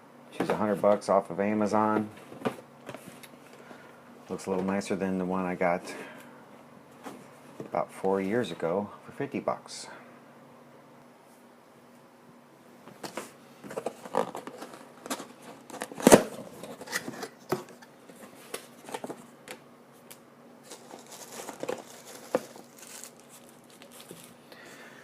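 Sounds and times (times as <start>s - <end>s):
cardboard and plastic rustling: 13.0s - 19.3s, 20.6s - 24.4s.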